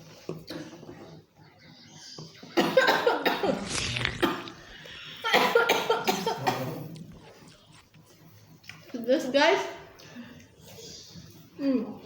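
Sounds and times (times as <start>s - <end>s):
woman coughing hard: 2.6s - 4.4s, 5.2s - 6.8s.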